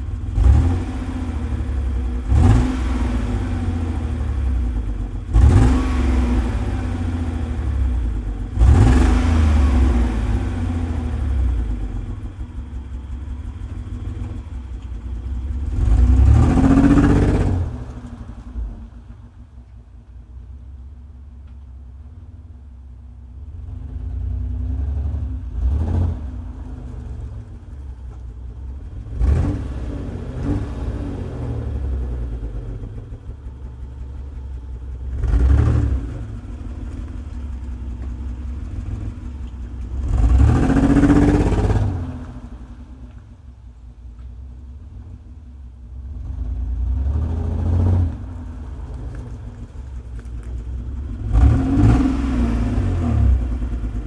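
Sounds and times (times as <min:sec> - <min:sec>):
engine revving: 0:00.0 - 0:12.3, 0:15.5 - 0:18.8, 0:23.6 - 0:27.6, 0:28.9 - 0:43.2, 0:46.0 - 0:54.0
car exhaust idling rough: 0:00.0 - 0:54.0.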